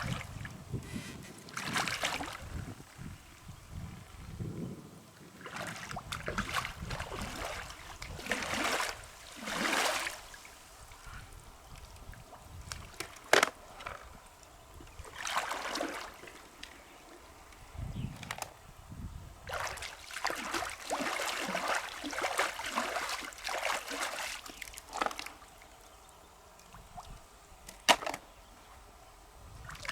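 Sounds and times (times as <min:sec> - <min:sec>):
water splashing and sloshing: 0:00.0 - 0:03.2, 0:05.2 - 0:17.6, 0:19.4 - 0:25.9, 0:29.5 - 0:29.9.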